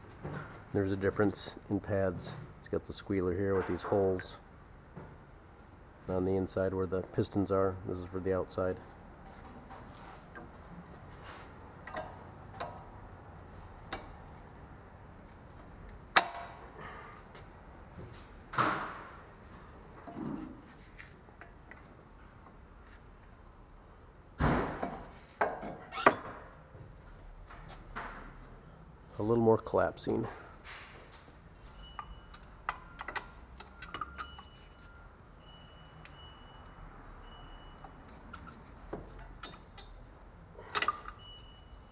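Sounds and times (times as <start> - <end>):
metallic clicks of brake parts: 32.0 - 34.5.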